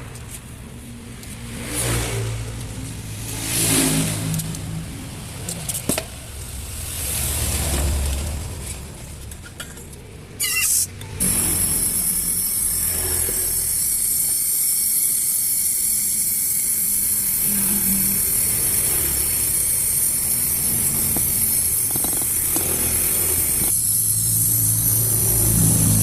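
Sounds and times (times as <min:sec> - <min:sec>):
compressed gas hissing through tubing: 0:10.4 - 0:26.0.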